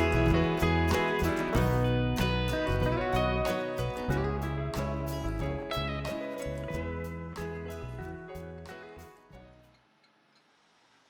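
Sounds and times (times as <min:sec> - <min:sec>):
instrumental music with plucked guitar: 0:00.0 - 0:09.7.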